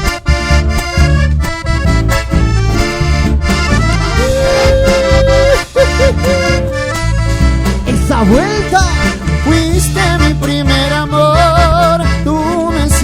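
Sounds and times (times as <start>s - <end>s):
accordion folk band playing: 0.0s - 13.0s
steady bass beat: 0.0s - 13.0s
long held note: 3.9s - 5.7s.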